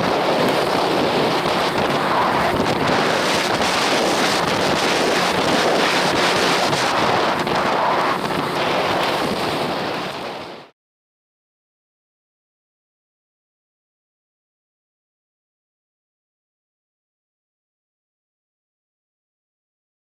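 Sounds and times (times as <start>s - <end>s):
wind buffeting microphone: 0.0s - 10.7s.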